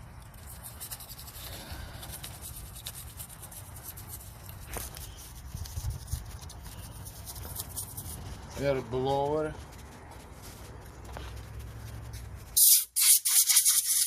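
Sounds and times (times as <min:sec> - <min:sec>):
toothbrush scrubbing metal: 0:12.6 - 0:14.0.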